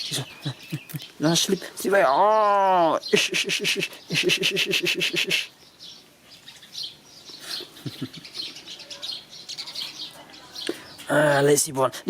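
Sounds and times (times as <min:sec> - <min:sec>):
faint bird chirps: 0:02.4 - 0:11.5
bird rapid chattering call: 0:03.0 - 0:11.0.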